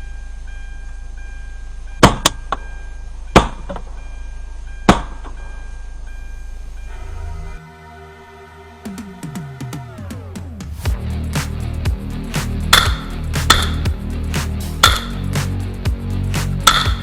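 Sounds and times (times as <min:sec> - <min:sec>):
background music: 0:06.9 - 0:17.0.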